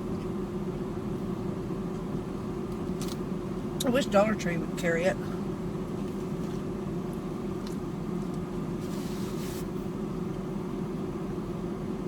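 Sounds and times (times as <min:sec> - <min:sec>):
car cabin engine hum: 0:00.0 - 0:12.0
short rustling: 0:08.8 - 0:09.7.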